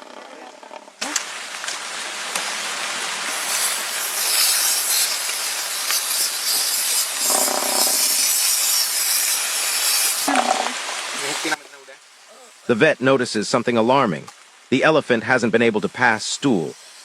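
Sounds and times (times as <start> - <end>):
aerosol spray hissing: 3.3 - 10.3.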